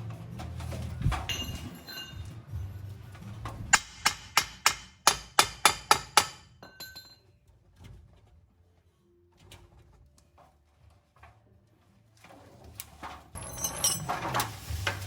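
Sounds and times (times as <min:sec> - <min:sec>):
hammer striking metal: 0:03.7 - 0:07.2.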